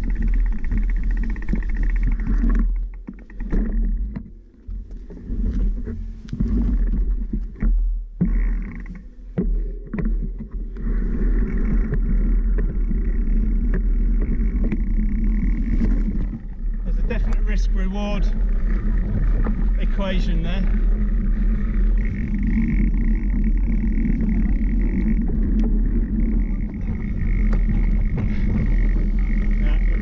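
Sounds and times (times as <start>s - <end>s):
vehicle engine running: 10.7s - 30.0s.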